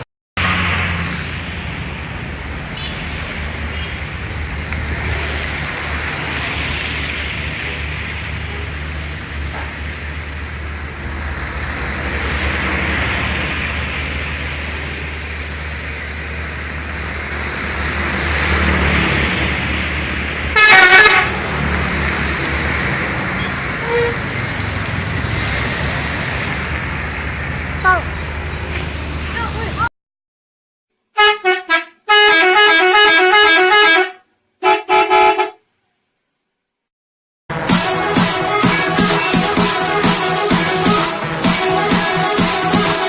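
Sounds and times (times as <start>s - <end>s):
traffic passing: 0.0s - 29.9s, 37.5s - 43.0s
bus horn with wavering tones: 20.6s - 21.5s, 23.8s - 24.3s, 31.1s - 35.7s.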